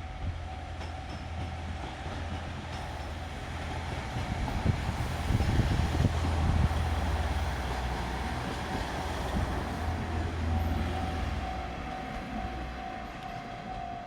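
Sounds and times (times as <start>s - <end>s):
diesel railcar engine rumble: 0.0s - 14.0s
train wheels clicking on rail joints: 0.2s - 14.0s
level crossing alarm ringing: 9.8s - 14.0s.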